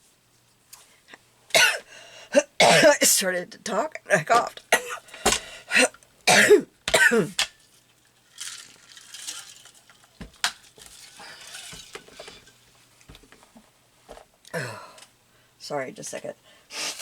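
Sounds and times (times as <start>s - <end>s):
woman's voice: 2.8s - 4.6s, 15.6s - 16.4s
rustling of craft supplies: 7.3s - 14.3s.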